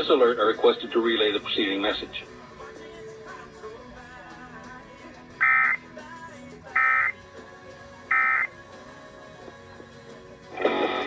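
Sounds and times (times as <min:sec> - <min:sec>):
faint background music: 0:00.0 - 0:11.0
digital data tone bursts: 0:05.4 - 0:05.8, 0:06.8 - 0:07.1, 0:08.1 - 0:08.5.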